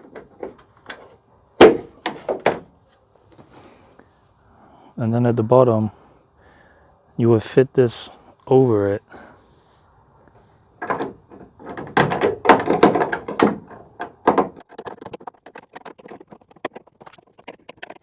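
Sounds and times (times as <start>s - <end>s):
metal and plastic parts knocking: 0.0s - 2.7s, 10.8s - 18.0s.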